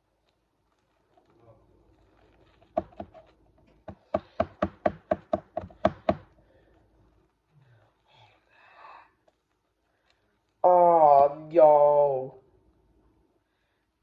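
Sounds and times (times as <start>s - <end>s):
hard object knocking: 2.7s - 3.2s, 3.8s - 6.3s.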